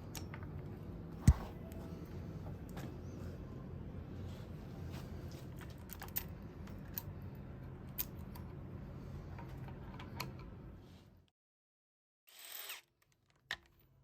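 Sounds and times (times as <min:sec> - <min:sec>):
steady low hum: 0:00.0 - 0:11.3.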